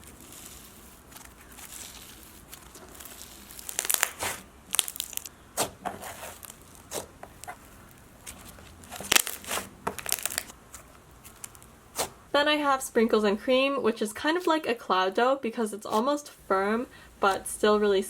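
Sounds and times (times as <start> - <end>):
slime crunching: 0.0 - 12.2.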